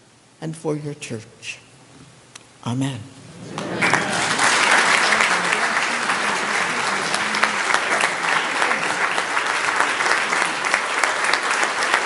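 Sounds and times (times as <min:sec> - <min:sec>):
crowd applauding: 0:03.4 - 0:12.0.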